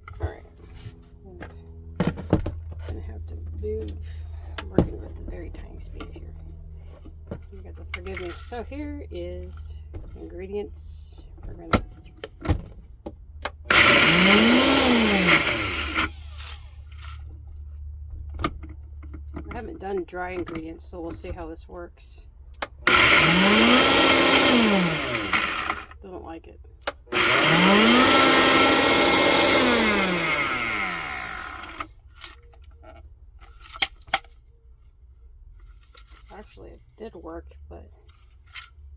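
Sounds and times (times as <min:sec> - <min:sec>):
blender motor running: 0:13.5 - 0:16.9, 0:22.9 - 0:26.0, 0:26.9 - 0:32.0.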